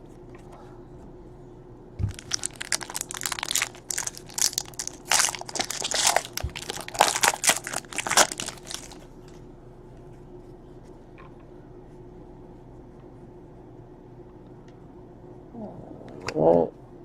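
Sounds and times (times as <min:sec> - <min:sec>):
foil wrapper crinkling: 0:02.1 - 0:09.0.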